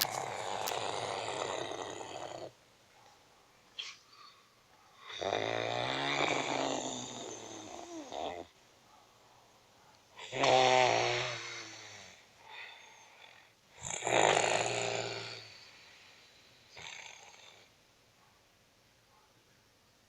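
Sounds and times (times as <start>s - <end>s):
quiet breathing: 0.0s - 5.3s, 11.2s - 13.8s, 14.9s - 18.4s
person snoring: 5.1s - 8.5s, 13.8s - 15.8s.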